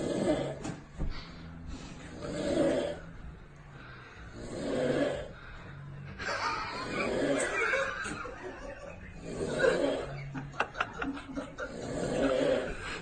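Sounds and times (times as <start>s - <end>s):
person snoring: 0.0s - 13.0s
stifled snickering laughter: 6.1s - 13.0s.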